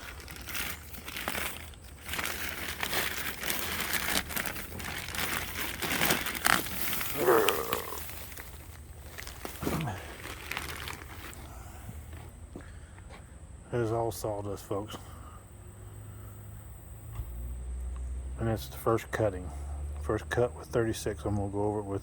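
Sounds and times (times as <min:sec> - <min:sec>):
plastic bag rustling and crinkling: 0:00.0 - 0:12.3.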